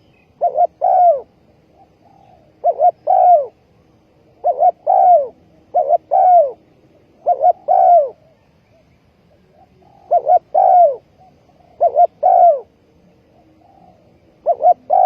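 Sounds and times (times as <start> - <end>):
dove cooing: 0.0 - 15.0.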